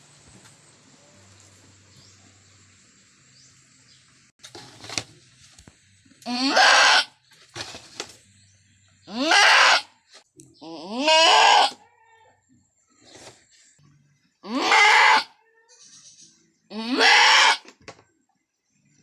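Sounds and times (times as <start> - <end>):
goat bleating loudly: 6.2 - 7.1, 9.1 - 10.0, 10.6 - 11.8, 14.4 - 15.9, 16.7 - 17.7.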